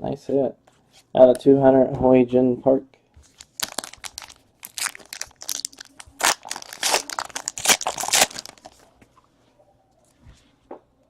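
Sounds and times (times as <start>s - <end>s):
plastic packaging crinkling: 3.2s - 8.9s.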